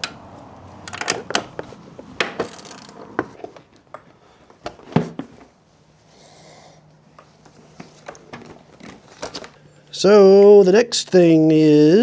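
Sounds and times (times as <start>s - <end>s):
metal hardware clicking and knocking: 0.8s - 1.6s.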